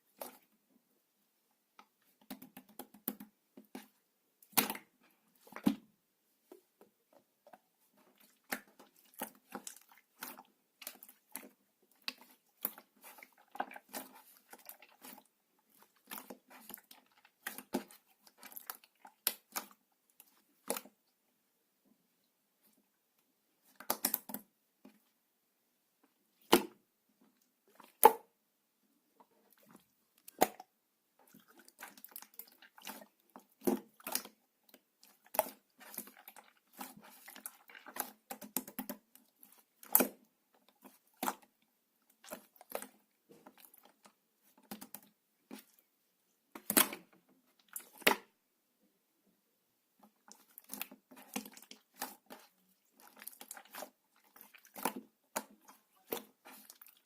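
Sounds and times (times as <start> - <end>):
sticky slime crackles: 8.0 - 20.9, 29.6 - 41.5, 42.1 - 45.8, 50.2 - 57.0.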